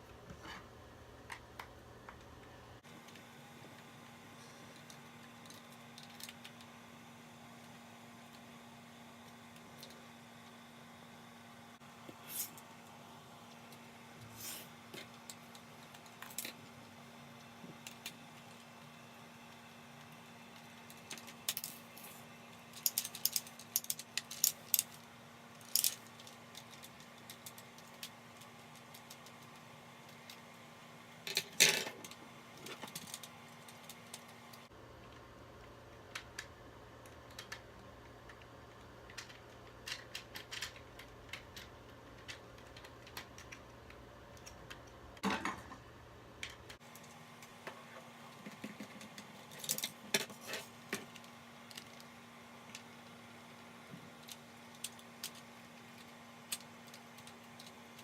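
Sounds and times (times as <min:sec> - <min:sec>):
plastic and metal parts clicking: 0:22.8 - 0:25.0, 0:36.1 - 0:45.5.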